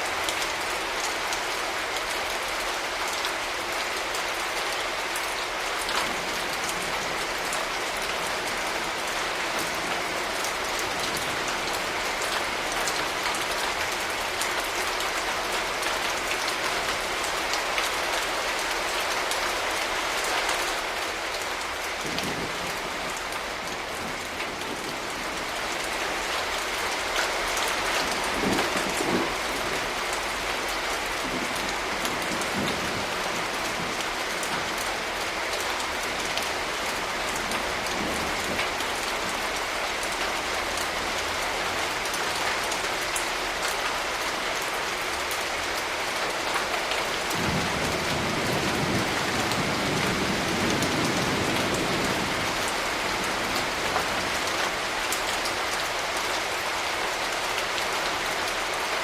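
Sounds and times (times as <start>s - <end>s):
steady rain falling: 0.0s - 59.0s
distant thunder rumbling: 47.2s - 53.8s.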